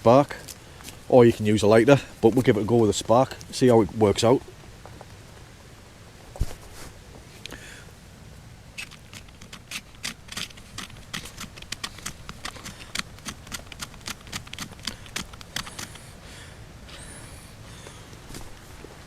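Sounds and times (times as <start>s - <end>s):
ferro rod scraping: 8.8s - 16.1s.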